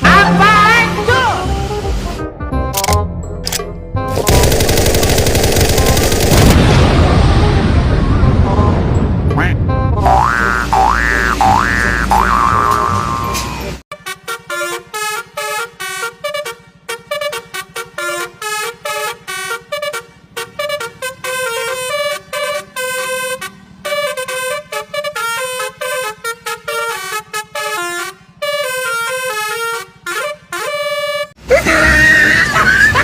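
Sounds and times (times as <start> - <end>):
bus horn playing a tune: 0.0 - 2.2, 9.4 - 31.4.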